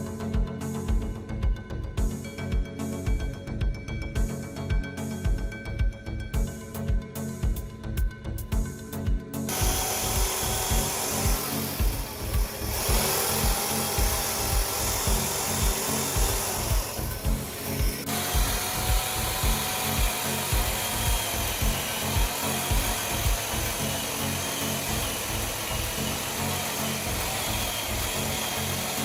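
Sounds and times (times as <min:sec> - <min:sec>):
background music with beat: 0:00.0 - 0:29.0
power tool working wood: 0:09.5 - 0:29.0.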